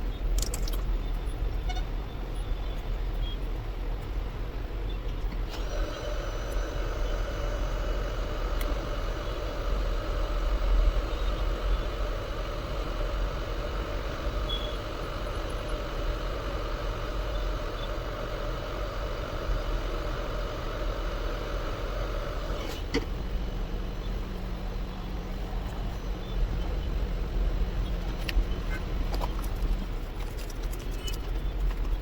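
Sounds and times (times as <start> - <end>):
hot air station whirring and hissing: 0.0 - 32.0.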